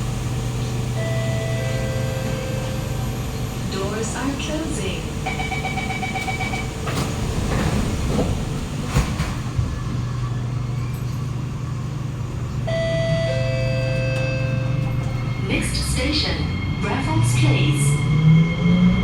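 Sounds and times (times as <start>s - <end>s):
train doors knocking shut: 4.2s - 11.4s
door-closing chime beeping: 5.3s - 6.8s.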